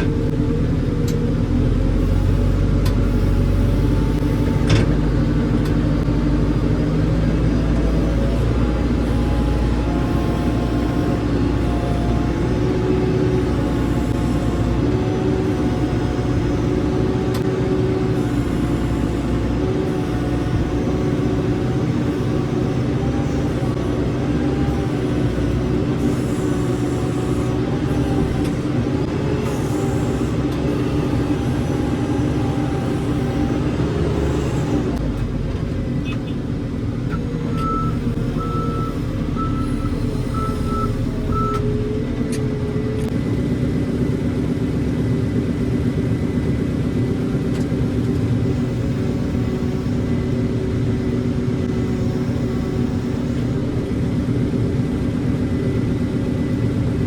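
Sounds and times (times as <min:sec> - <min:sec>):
diesel machinery running: 0:00.0 - 0:57.0
reversing alarm beeping: 0:37.5 - 0:41.7.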